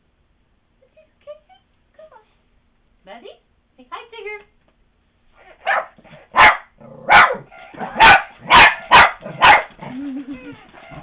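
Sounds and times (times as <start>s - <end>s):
dog barking: 5.5s - 9.8s.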